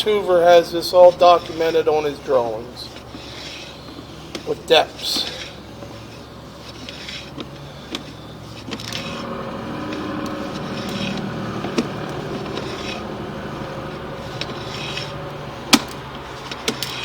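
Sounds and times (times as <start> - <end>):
motor running with low hum: 5.2 - 17.0.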